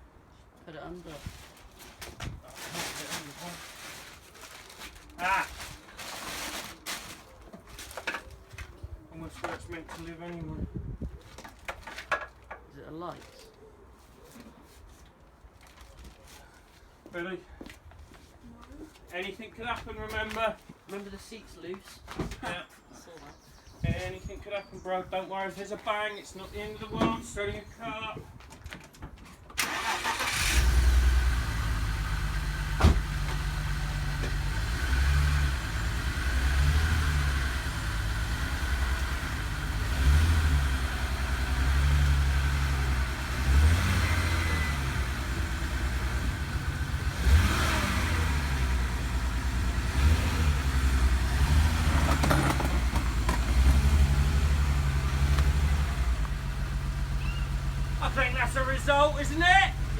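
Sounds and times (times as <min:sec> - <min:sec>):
car engine starting and revving: 0:29.6 - 0:58.7.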